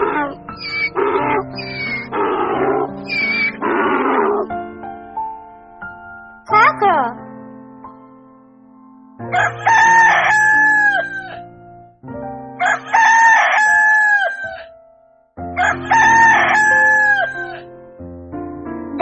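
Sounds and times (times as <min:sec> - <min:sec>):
background music: 0:00.0 - 0:19.0
rooster crowing: 0:09.4 - 0:11.4, 0:12.6 - 0:14.6, 0:15.6 - 0:17.6.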